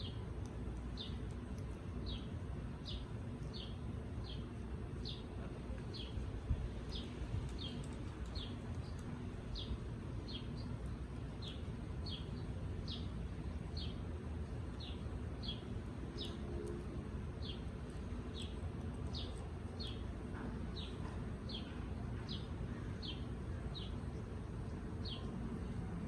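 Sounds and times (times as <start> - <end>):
low background rumble: 0.0 - 26.0
bird chirping: 0.8 - 1.4, 2.0 - 5.3, 6.9 - 14.1, 14.7 - 16.7, 17.4 - 20.1, 20.7 - 24.2, 25.0 - 25.4.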